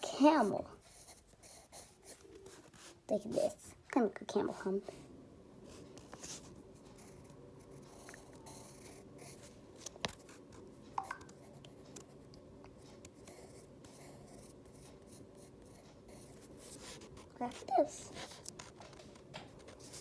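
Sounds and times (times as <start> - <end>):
pencil scratching on paper: 0.0 - 3.7, 6.0 - 10.5, 13.0 - 18.8, 19.6 - 20.0
low room hum: 0.0 - 20.0.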